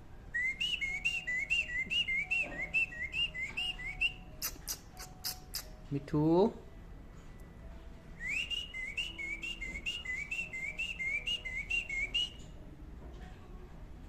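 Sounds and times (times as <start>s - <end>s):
cockatiel whistling: 0.4s - 5.7s, 8.2s - 12.5s.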